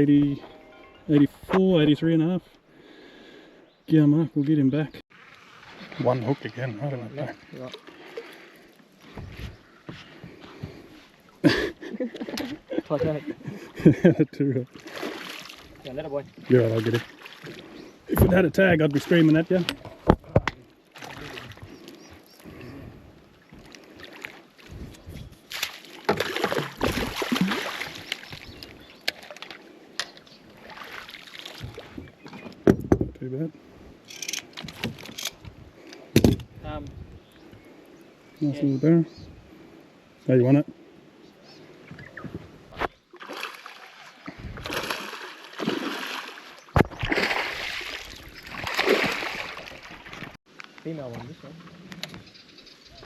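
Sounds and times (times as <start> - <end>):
water splashing against boat: 5.1 - 14.0, 14.6 - 33.0, 41.9 - 50.4.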